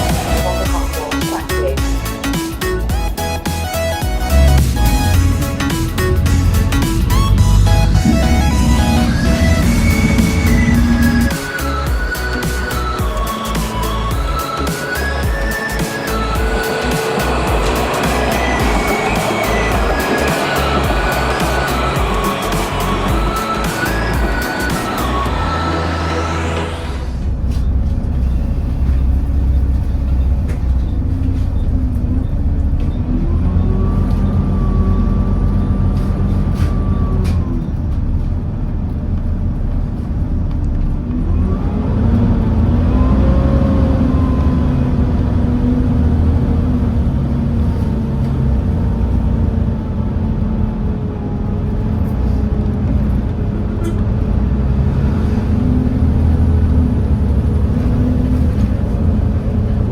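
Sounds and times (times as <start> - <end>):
bus diesel engine rumbling: 0.0 - 59.9
engine whine rising: 0.0 - 59.9.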